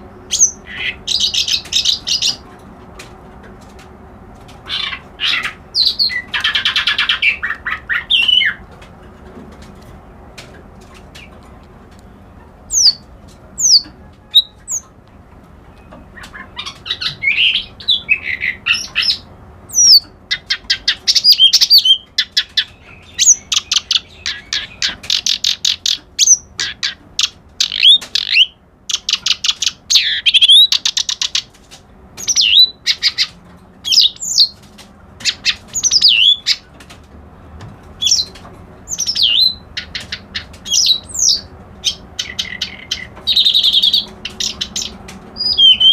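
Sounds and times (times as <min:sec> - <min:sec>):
reed warbler singing: 0:00.3 - 0:02.5, 0:04.7 - 0:08.6, 0:12.0 - 0:14.9, 0:15.7 - 0:31.5, 0:32.2 - 0:34.6, 0:35.2 - 0:36.7, 0:38.0 - 0:45.9.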